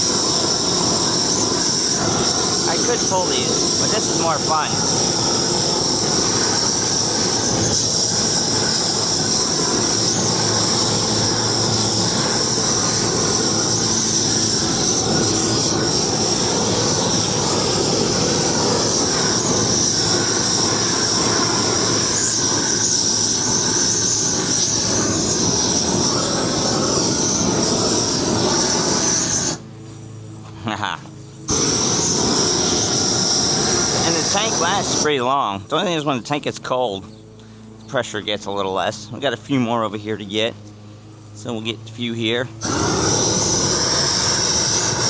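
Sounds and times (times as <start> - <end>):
gas jet hissing: 0.0 - 29.6, 31.5 - 35.4, 42.6 - 45.0
torch flame roaring: 0.0 - 29.8, 30.5 - 36.9, 42.1 - 45.0.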